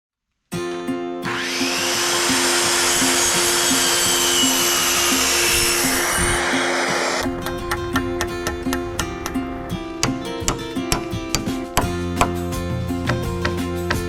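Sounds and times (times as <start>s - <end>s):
power tool running: 1.2s - 11.9s
background music with a beat: 7.3s - 14.0s.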